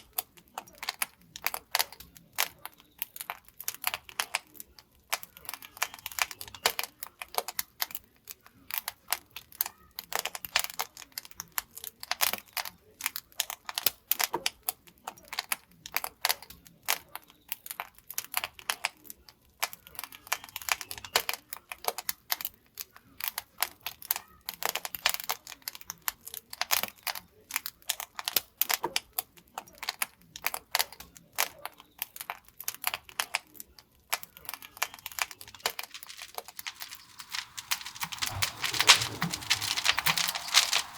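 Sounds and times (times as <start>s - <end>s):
firewood crackling and popping: 34.4s - 40.9s.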